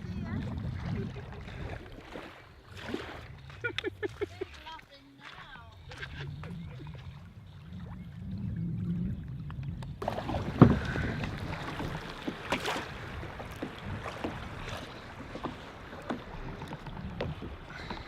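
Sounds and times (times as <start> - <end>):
paddle splashing in water: 0.0 - 8.2, 9.8 - 18.0
water drips: 1.8 - 18.0
knocks on kayak: 10.0 - 12.8.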